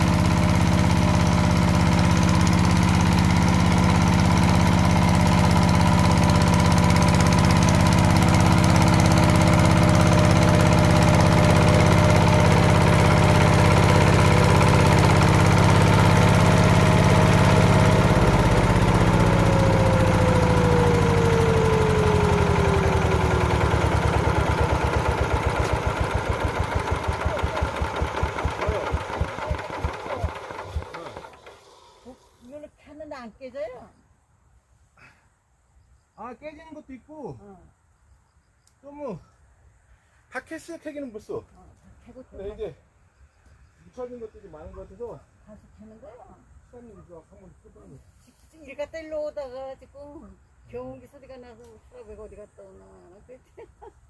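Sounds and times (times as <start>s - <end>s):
diesel engine running: 0.0s - 32.6s.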